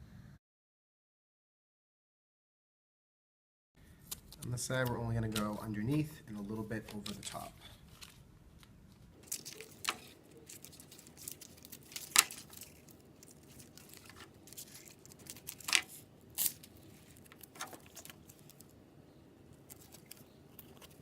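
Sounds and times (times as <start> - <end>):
velcro tearing and crinkling: 9.2 - 18.7, 19.6 - 21.0.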